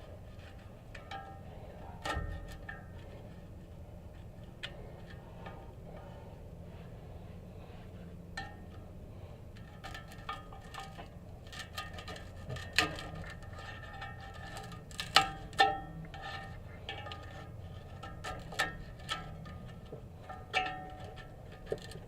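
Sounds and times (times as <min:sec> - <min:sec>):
metal clinks on exhaust pipe: 0:08.3 - 0:22.0.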